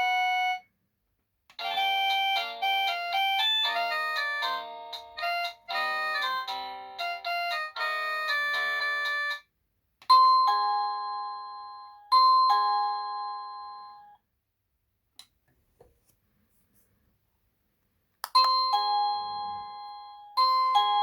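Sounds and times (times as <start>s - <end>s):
doorbell melody: 0.0s - 0.7s, 1.6s - 9.5s, 10.1s - 14.2s, 18.4s - 21.0s
ding-dong doorbell chime: 10.1s - 14.2s, 18.4s - 21.0s.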